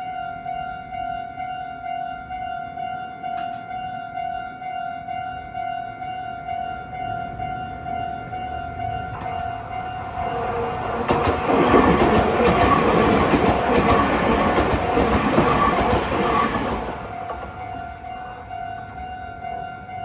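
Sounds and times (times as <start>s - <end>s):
level crossing warning signal: 7.1s - 19.6s
train wheels clattering: 9.1s - 18.0s.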